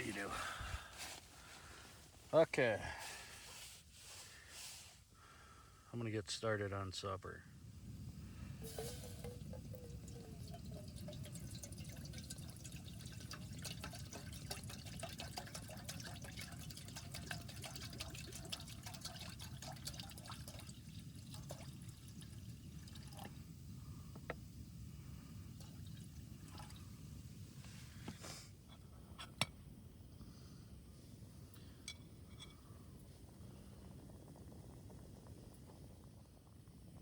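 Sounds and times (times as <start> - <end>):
water poured into pot: 7.9 - 24.1, 25.0 - 27.4.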